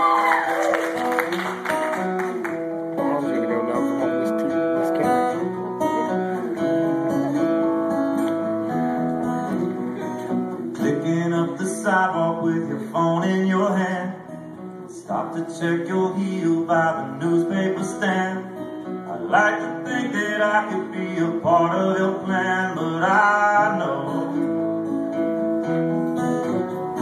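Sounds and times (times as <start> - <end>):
acoustic guitar playing chords: 0.0 - 27.0.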